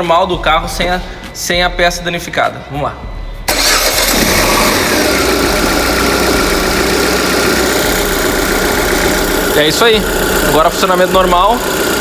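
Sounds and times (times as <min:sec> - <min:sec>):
engine whine: 0:03.5 - 0:12.0
petrol engine idling: 0:03.5 - 0:12.0.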